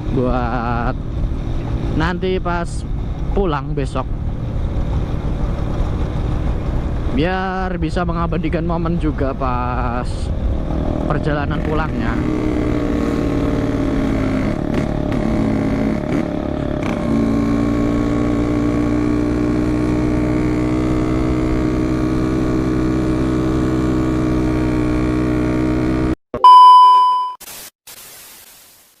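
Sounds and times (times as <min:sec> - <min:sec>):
two-stroke engine running: 0:10.6 - 0:26.2
short electronic beep: 0:26.4 - 0:27.4.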